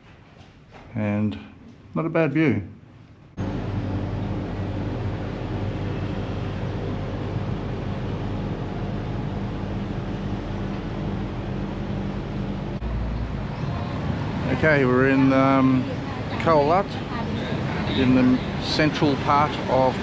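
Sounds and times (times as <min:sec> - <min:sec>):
road traffic drone: 0:03.3 - 0:20.0
low engine hum: 0:03.4 - 0:20.0.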